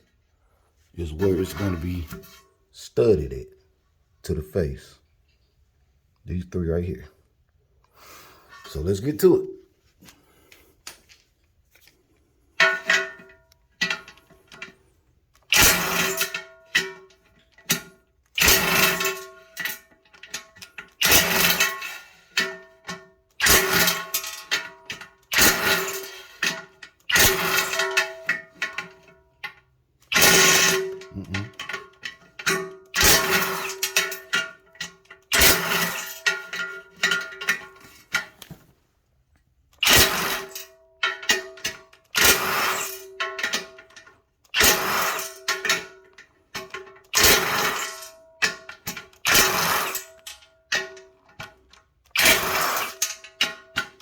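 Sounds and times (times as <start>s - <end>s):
impact wrench bursts: 15.5s - 16.8s, 18.4s - 19.7s, 21.0s - 22.4s, 23.4s - 24.6s, 25.3s - 28.8s, 30.1s - 34.6s, 35.3s - 37.5s, 39.8s - 43.6s, 44.5s - 45.9s, 47.1s - 48.1s, 49.2s - 50.1s, 52.2s - 53.2s.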